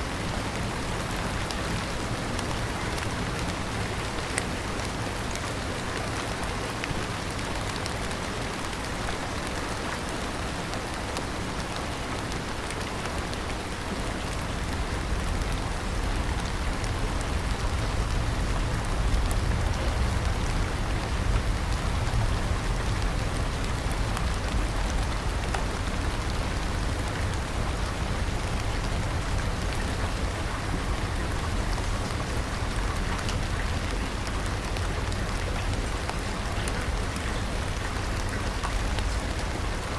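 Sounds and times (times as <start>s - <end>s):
steady rain falling: 0.0s - 39.9s
deep low rumble: 14.5s - 33.4s.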